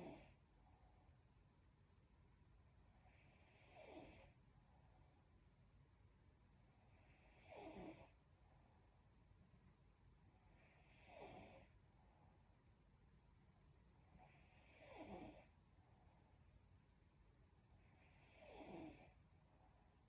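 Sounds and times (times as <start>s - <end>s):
woman snoring faintly: 7.1s - 8.2s, 14.2s - 15.5s, 17.9s - 19.2s.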